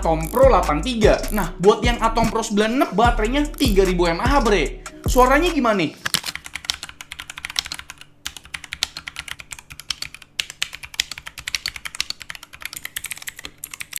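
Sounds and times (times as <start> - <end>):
mechanical keyboard typing: 6.0 - 14.0.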